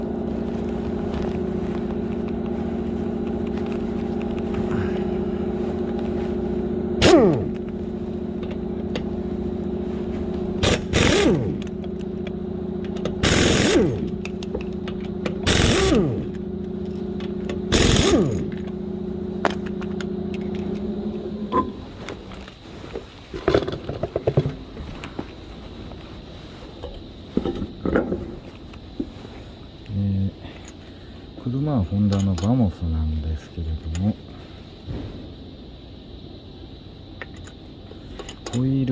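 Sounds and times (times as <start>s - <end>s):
impact wrench bursts: 0.0s - 22.5s
steady machine hum: 0.0s - 38.9s.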